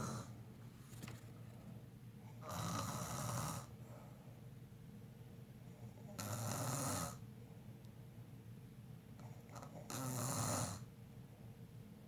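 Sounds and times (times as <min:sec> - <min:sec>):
quiet breathing: 0:00.0 - 0:04.5
person snoring: 0:02.4 - 0:03.7.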